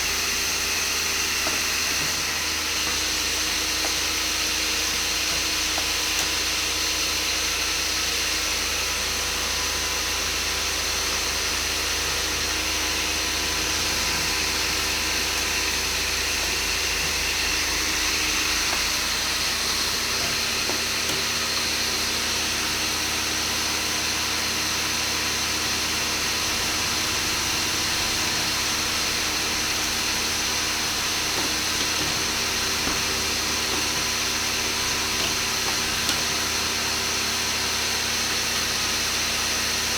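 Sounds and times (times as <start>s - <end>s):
machine humming: 25.4s - 39.9s
machine hiss: 25.8s - 39.9s
steady machine tones: 26.2s - 39.0s.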